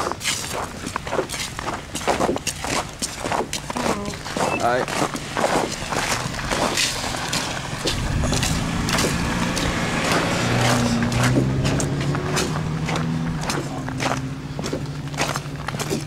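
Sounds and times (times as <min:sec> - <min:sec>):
footsteps crunching on ice: 0:00.0 - 0:16.0
vehicle engine hum: 0:03.6 - 0:16.0.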